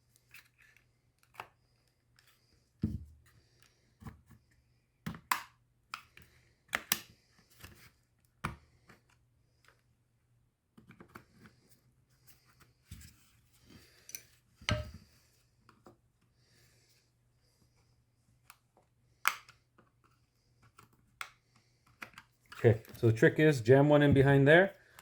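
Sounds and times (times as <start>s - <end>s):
plastic tabs clicking and scraping: 5.1s - 9.8s, 10.7s - 11.5s, 18.4s - 23.0s.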